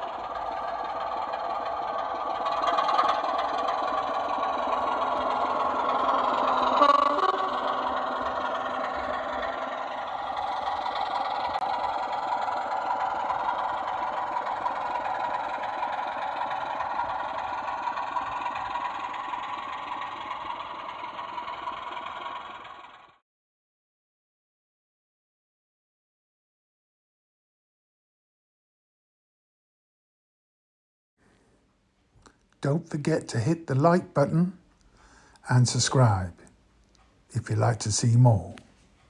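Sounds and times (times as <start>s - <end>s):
diesel engine through small speaker: 0.0s - 23.2s, 32.6s - 36.5s, 37.3s - 38.8s.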